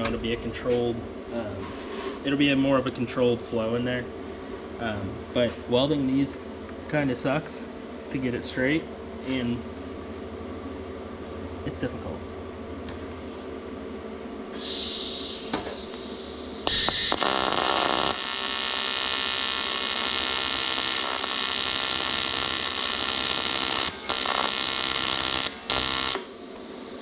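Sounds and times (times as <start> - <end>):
welding arc buzzing: 14.5 - 26.4.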